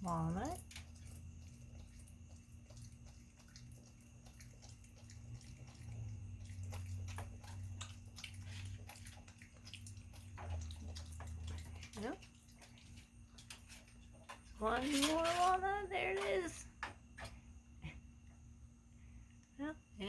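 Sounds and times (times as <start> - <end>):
faint water splashing: 0.0 - 18.0.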